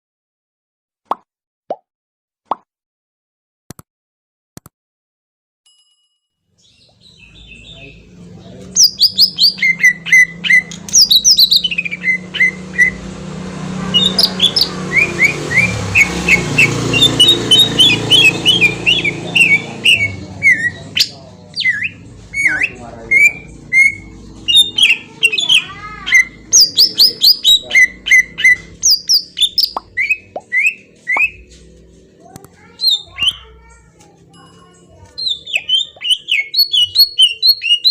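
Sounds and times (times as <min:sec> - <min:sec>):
bird chirping and trilling: 0:06.6 - 0:31.6, 0:32.6 - 0:33.9, 0:34.6 - 0:37.9
rushing background noise: 0:07.1 - 0:34.3.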